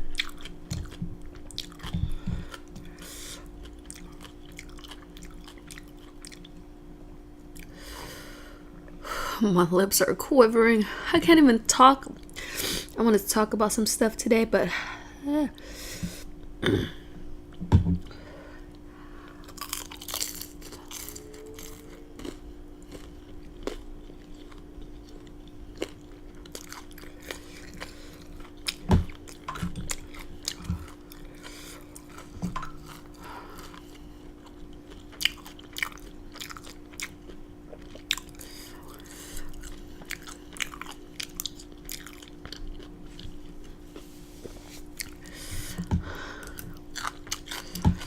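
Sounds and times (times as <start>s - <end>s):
person chewing noodles: 0.0s - 6.7s, 7.5s - 8.0s, 18.6s - 48.0s
steady low hum: 0.0s - 48.0s.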